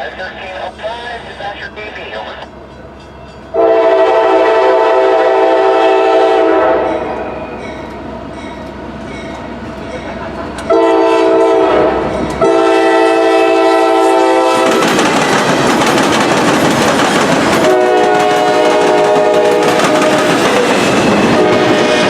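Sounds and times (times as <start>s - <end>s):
train passing roar: 0.0s - 22.0s
locomotive air horn chord: 3.6s - 7.5s, 10.7s - 14.8s, 17.6s - 20.3s, 21.2s - 22.0s
wheels clacking over rail joints: 14.6s - 21.4s.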